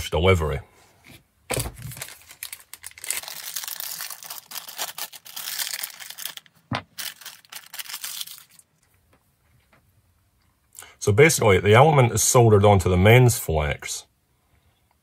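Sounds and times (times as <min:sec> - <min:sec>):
packaging crinkling and tearing: 0:01.5 - 0:08.9.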